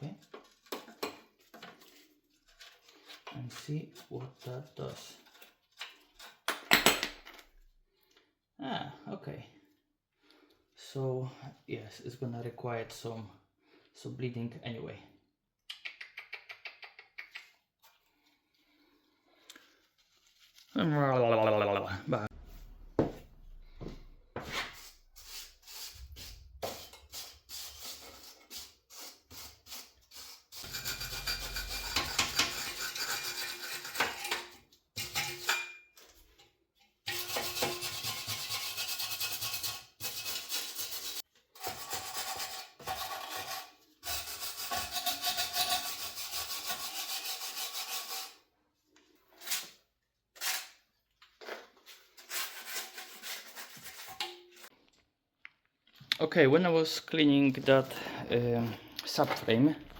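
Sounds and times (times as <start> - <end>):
scrubbing on metal: 24.4 - 35.6, 37.1 - 48.4.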